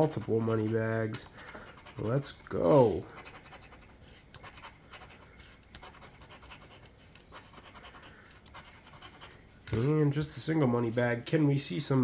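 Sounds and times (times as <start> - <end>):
scratch-off ticket scratching: 0.0 - 10.1.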